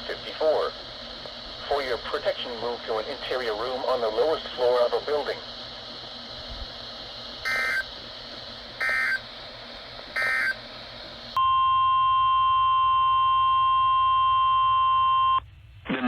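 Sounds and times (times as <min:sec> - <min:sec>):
radio hiss: 0:00.0 - 0:11.4
buzzing digital data bursts: 0:07.4 - 0:07.9, 0:08.8 - 0:09.2, 0:10.2 - 0:10.6
steady warning alarm tone: 0:07.4 - 0:08.0, 0:08.8 - 0:09.3, 0:10.1 - 0:11.4.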